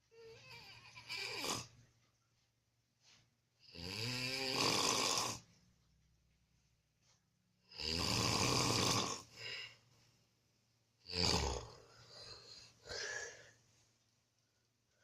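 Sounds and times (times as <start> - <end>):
soft breaths: 0.0 - 3.6, 9.2 - 10.4, 11.6 - 15.0
man snoring: 0.2 - 1.7, 3.7 - 5.4, 7.7 - 9.3, 11.0 - 11.8.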